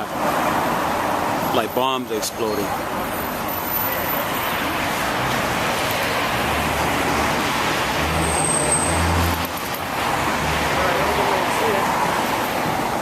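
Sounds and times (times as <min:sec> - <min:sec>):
city street traffic: 0:00.0 - 0:13.0
brief high squeal: 0:08.2 - 0:09.0.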